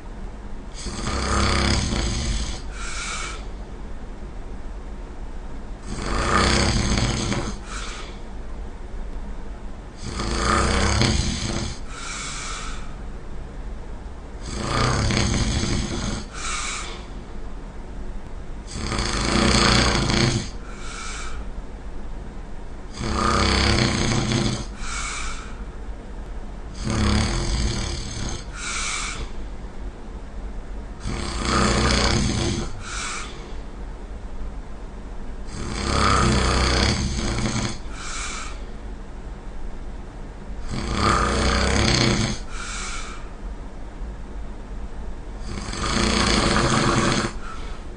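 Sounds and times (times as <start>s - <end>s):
person snoring loudly: 0.8s - 3.5s, 5.8s - 8.2s, 10.0s - 13.0s, 14.4s - 17.2s, 18.7s - 21.4s, 22.9s - 25.7s, 26.7s - 29.4s, 31.0s - 33.6s, 35.4s - 38.7s, 40.6s - 43.3s, 45.4s - 47.8s
short high breath: 20.7s - 21.4s, 32.8s - 33.6s, 37.9s - 38.7s, 42.5s - 43.3s.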